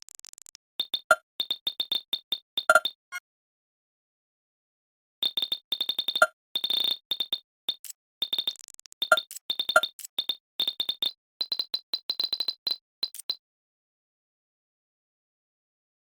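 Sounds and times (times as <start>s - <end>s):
fast typing on keyboard: 7.1s - 13.4s.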